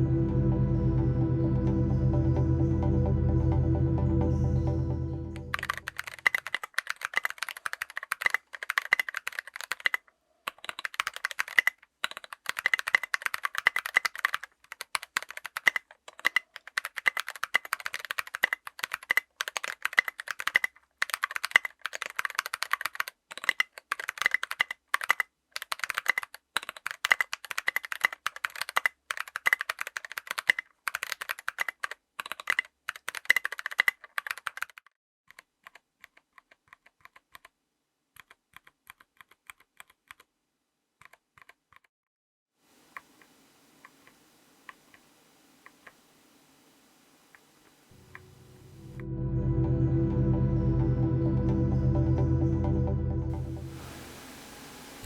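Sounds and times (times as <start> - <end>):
fast typing on mechanical keyboard: 5.5 - 37.5, 38.2 - 40.3, 41.0 - 41.9.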